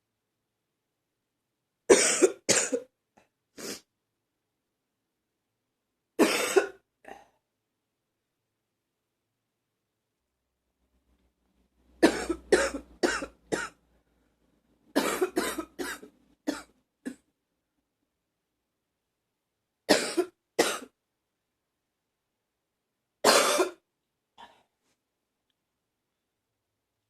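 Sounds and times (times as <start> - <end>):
woman coughing: 1.9 - 2.9, 6.2 - 6.8, 12.0 - 13.8, 15.0 - 17.2, 19.9 - 20.9, 23.2 - 23.8.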